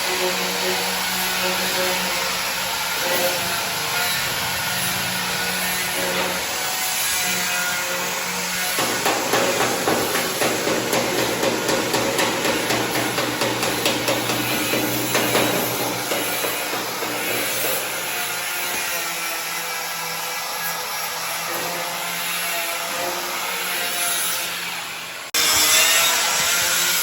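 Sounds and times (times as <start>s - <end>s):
workshop machinery running: 0.0s - 19.2s
rapid hammer-like strikes: 8.7s - 18.4s.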